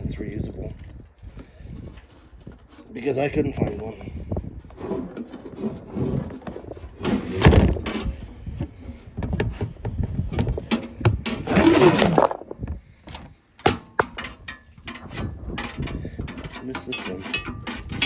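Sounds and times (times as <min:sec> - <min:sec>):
loud scraping bursts: 0:04.6 - 0:12.6
plastic parts clicking and knocking: 0:13.1 - 0:18.0.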